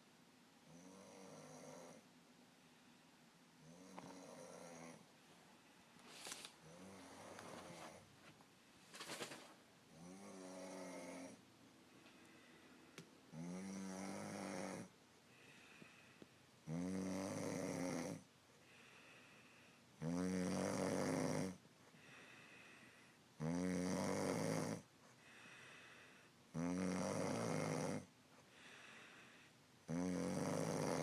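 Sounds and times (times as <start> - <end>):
man snoring: 0.7 - 2.0, 3.6 - 5.0, 6.6 - 7.6, 9.9 - 11.4, 13.3 - 14.9, 16.6 - 18.3, 20.0 - 21.6, 23.4 - 29.3, 29.9 - 31.0
faint breaths: 0.8 - 13.3, 13.9 - 16.6, 18.5 - 20.0, 21.7 - 23.4, 24.8 - 26.5, 28.1 - 29.8.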